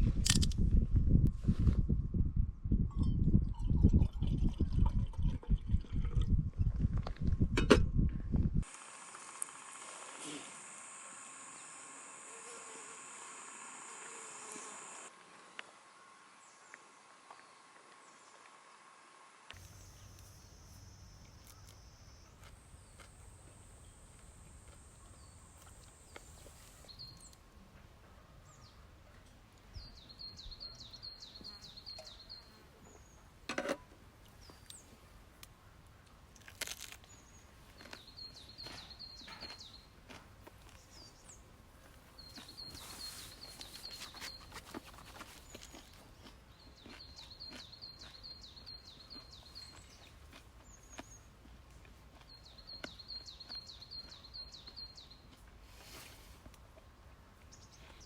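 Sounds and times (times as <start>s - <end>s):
quiet outdoor ambience: 0.0s - 58.0s
songbird singing: 19.6s - 27.6s, 28.2s - 33.4s, 37.0s - 51.5s, 52.1s - 56.0s.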